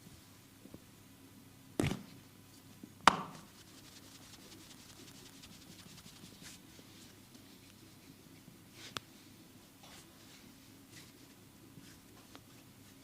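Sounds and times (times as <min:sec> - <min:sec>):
hand slapping skin: 0:03.1 - 0:03.5
hands rubbing skin: 0:03.4 - 0:07.2.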